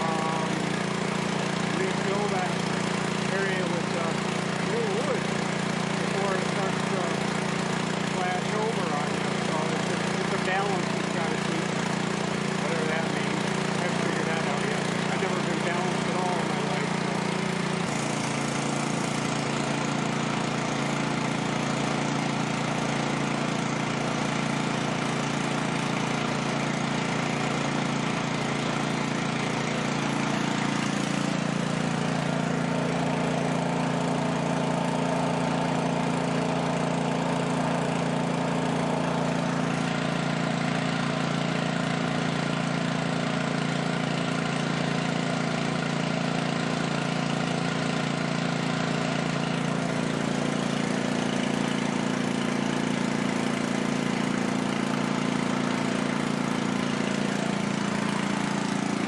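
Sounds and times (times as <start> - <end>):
generator engine running: 0.0 - 59.0.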